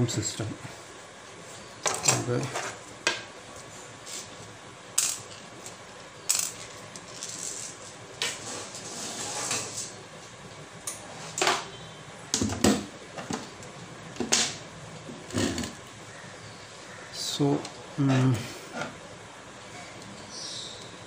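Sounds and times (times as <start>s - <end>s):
scraping rustle: 7.0s - 10.0s.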